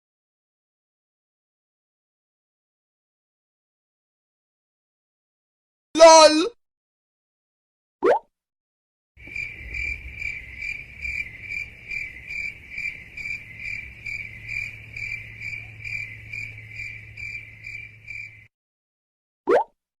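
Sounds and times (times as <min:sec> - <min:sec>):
crickets chirping: 0:09.2 - 0:18.5.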